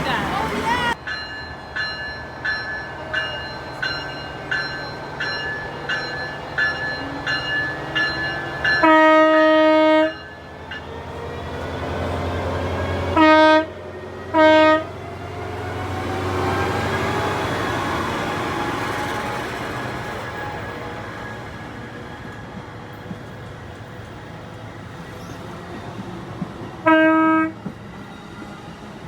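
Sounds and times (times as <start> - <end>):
low train rumble: 0.0 - 29.0
bell ringing: 0.1 - 9.2, 10.0 - 10.9
air horn blasts: 8.8 - 10.2, 13.2 - 13.7, 14.3 - 14.9, 26.8 - 27.6.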